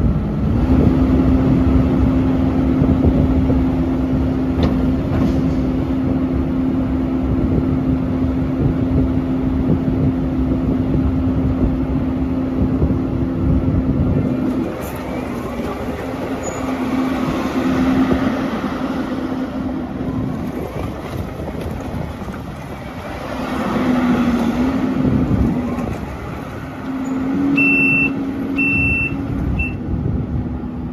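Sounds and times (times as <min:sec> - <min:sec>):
diesel engine humming: 0:00.0 - 0:30.9
short high beeps: 0:27.6 - 0:29.8.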